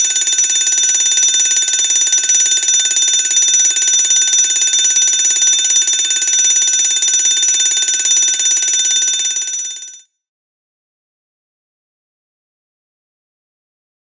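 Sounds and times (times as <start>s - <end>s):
fire alarm bell ringing: 0.0s - 10.1s.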